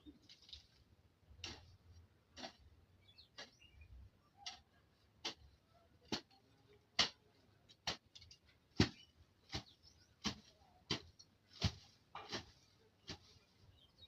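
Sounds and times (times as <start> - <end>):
weeding tool chopping into soil: 8.8 - 13.2.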